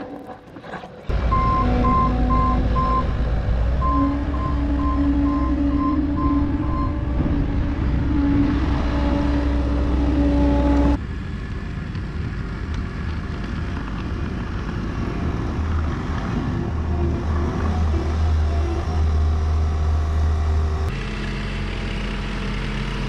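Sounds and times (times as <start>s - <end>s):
heavy equipment engine running: 0.0s - 23.0s
back-up alarm beeping: 1.3s - 3.2s, 3.8s - 7.1s.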